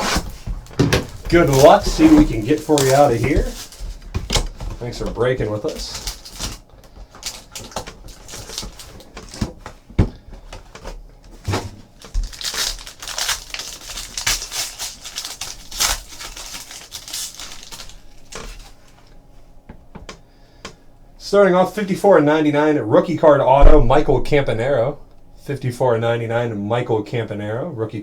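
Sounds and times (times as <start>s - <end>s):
plastic wrapper crinkling and tearing: 0.0s - 9.8s, 10.6s - 19.1s
cardboard and cards clicking: 0.1s - 9.5s.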